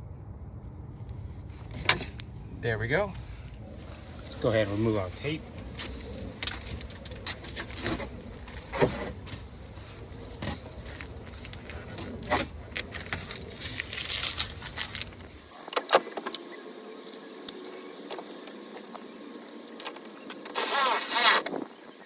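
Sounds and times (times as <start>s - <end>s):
handling clicks and knocks: 5.4s - 16.4s
tape peeling off glass: 5.6s - 15.5s, 20.5s - 21.5s.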